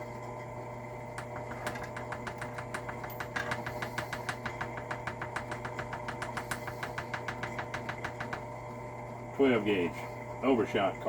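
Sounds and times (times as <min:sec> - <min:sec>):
steady hum: 0:00.0 - 0:11.0
rapid even tapping: 0:01.2 - 0:08.6.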